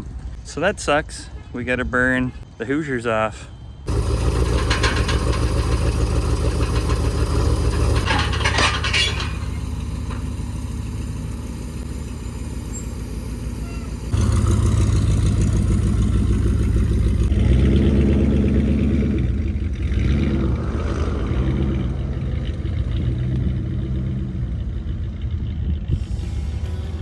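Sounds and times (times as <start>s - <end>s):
car engine revving: 3.9s - 26.1s.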